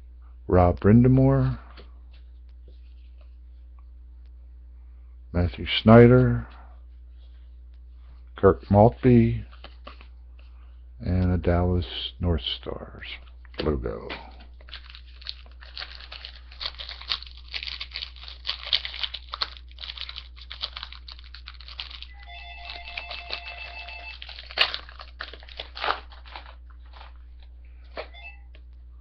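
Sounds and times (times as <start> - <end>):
wrapper crinkling and crackling: 14.4 - 27.5
foil pack tearing: 14.6 - 27.2
electronic chime: 22.1 - 24.2.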